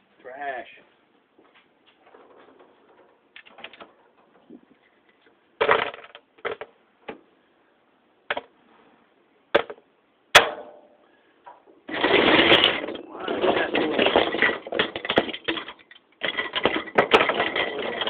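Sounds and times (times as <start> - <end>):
fan pieces clattering onto pile: 12.0 - 18.0.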